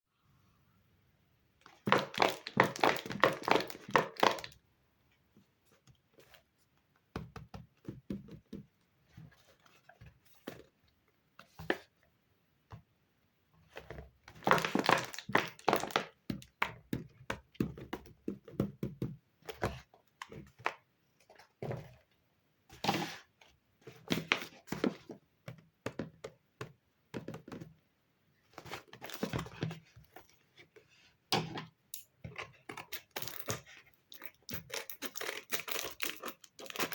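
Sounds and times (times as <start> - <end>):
paper and plastic crinkling: 32.8 - 36.9.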